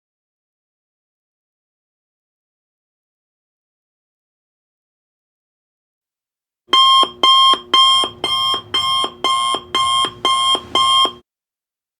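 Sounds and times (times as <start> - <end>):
timer alarm beeps: 6.7 - 11.2.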